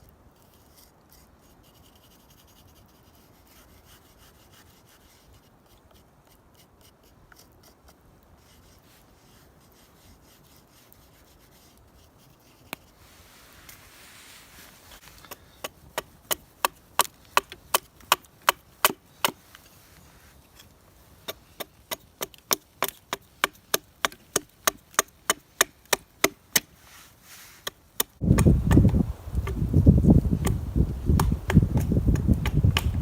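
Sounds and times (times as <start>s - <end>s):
chopping strokes into wood: 14.9s - 19.7s, 20.5s - 33.0s.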